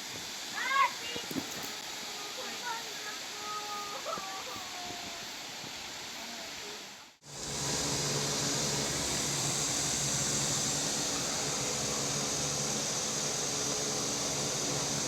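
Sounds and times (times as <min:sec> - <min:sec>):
electric fan motor humming: 0:07.3 - 0:15.0.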